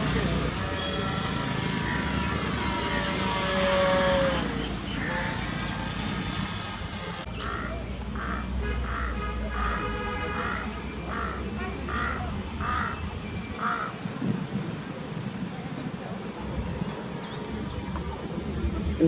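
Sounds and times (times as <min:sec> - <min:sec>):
rc airplane motor whine: 0:00.0 - 0:07.2
crow cawing: 0:07.3 - 0:13.0, 0:13.6 - 0:14.0.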